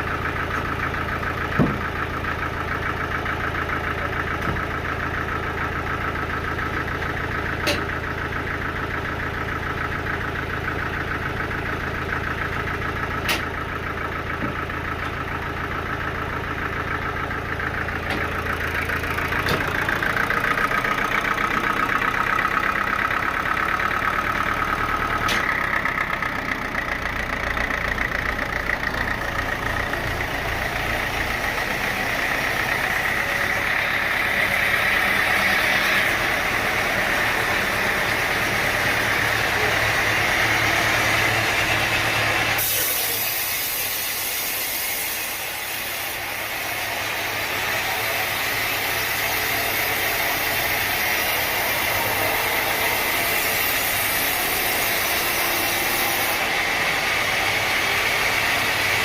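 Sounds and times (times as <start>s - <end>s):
sawmill machinery humming: 0.0s - 59.0s
sharp knocks: 1.6s - 1.9s.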